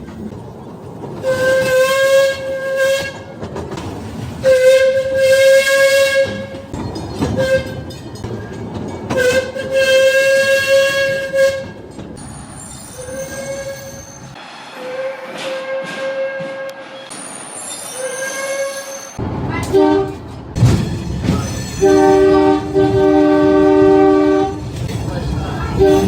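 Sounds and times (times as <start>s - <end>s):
moving train rumble: 0.0s - 26.0s
train horn blasts: 1.2s - 3.4s, 4.4s - 6.6s, 9.2s - 11.8s, 14.8s - 16.9s, 18.0s - 20.2s, 21.8s - 24.7s, 25.8s - 26.0s.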